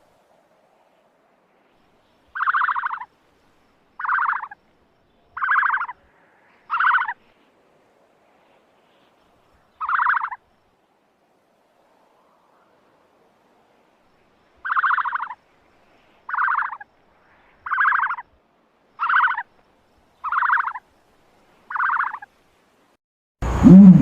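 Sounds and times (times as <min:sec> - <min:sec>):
ostrich buzzy calls: 0:02.4 - 0:03.1, 0:04.0 - 0:04.6, 0:05.4 - 0:06.0, 0:06.7 - 0:07.2, 0:09.8 - 0:10.4, 0:16.3 - 0:16.8, 0:17.6 - 0:18.2, 0:19.0 - 0:19.5, 0:20.2 - 0:20.8, 0:21.7 - 0:22.3.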